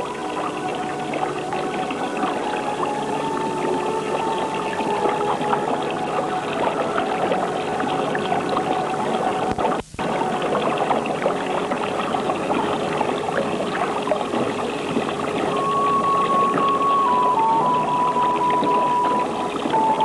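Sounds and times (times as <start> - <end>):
held musical note: 0.0 - 9.5, 14.8 - 20.0
running water: 0.0 - 20.0.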